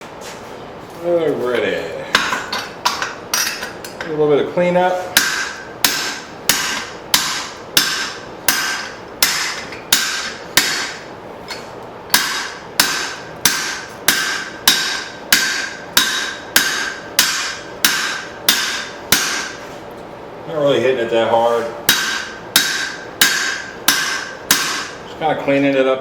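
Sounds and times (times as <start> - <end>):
hammer striking steel on anvil: 2.2 - 4.1, 5.2 - 11.1, 12.1 - 19.6, 21.9 - 25.0.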